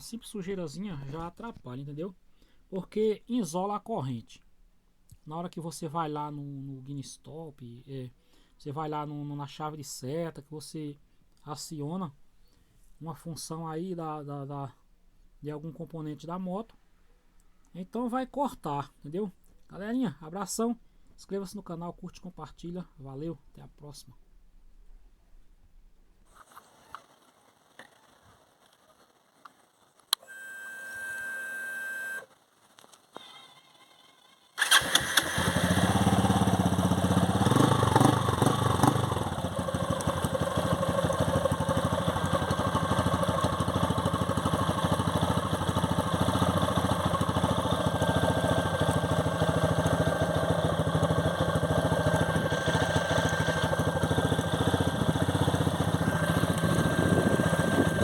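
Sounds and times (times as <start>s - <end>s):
fuel pump humming: 34.6s - 58.0s
motorcycle engine idling: 34.6s - 58.0s.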